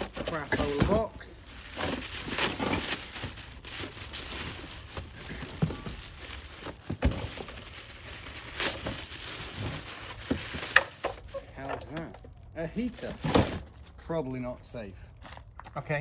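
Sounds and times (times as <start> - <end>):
paper rustling and crinkling: 0.0 - 14.0.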